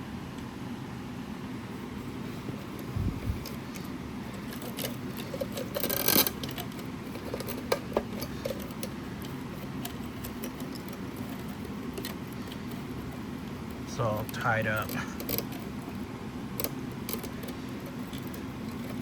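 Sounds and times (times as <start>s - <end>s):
low room hum: 0.0s - 19.0s.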